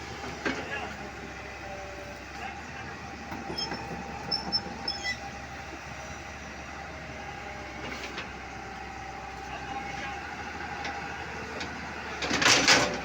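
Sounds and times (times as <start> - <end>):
high-pitched metallic squeaks: 3.5 - 5.4.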